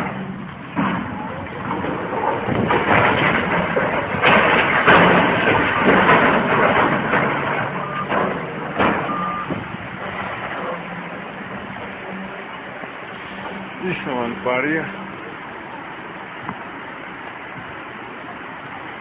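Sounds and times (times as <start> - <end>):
heavy machinery rumbling and clattering: 0.0 - 19.0
sharp knocks: 1.8 - 9.7
short high beeps: 9.1 - 9.5.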